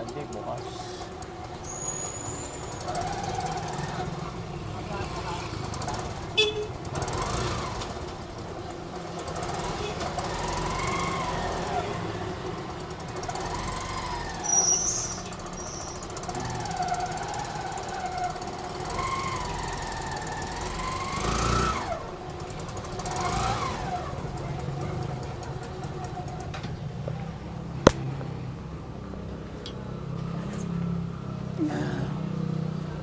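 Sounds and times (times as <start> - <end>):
steady traffic hum: 0.0 - 33.0
vehicle engines passing and revving: 0.0 - 33.0.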